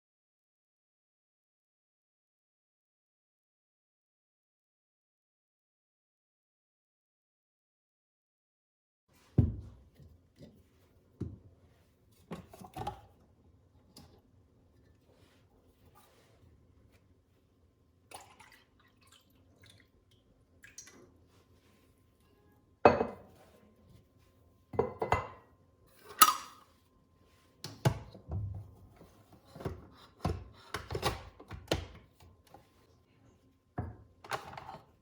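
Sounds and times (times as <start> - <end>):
cups knocking and clinking: 22.9 - 23.4, 24.8 - 26.5.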